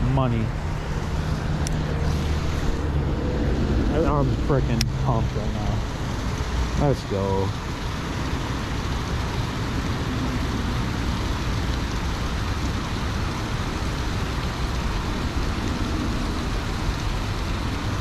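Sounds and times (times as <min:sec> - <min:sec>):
low rumble: 0:00.0 - 0:06.2
steady rushing outdoor noise: 0:00.0 - 0:18.0.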